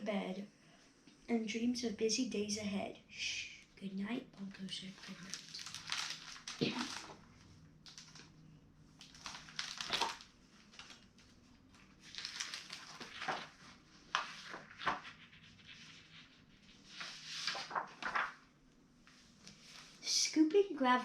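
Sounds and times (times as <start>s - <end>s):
book pages rustling: 4.9s - 18.5s.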